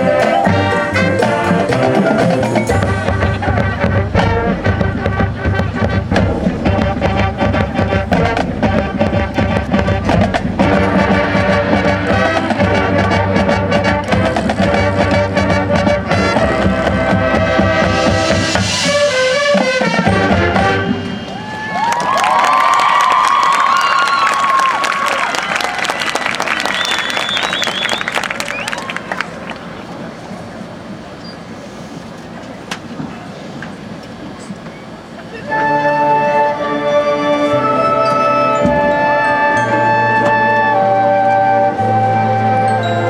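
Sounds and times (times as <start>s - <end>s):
brass section: 0.0s - 21.4s, 35.4s - 43.0s
drum line: 0.0s - 22.4s.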